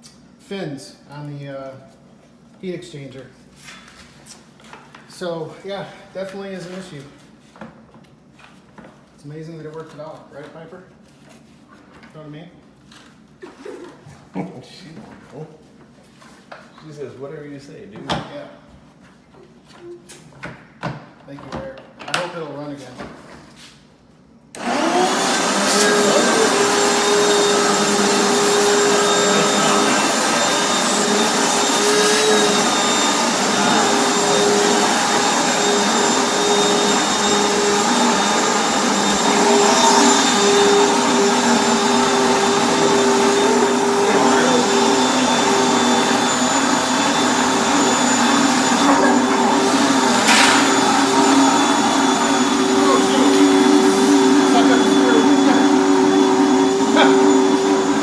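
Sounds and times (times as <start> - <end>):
vacuum cleaner running: 24.6 - 58.0.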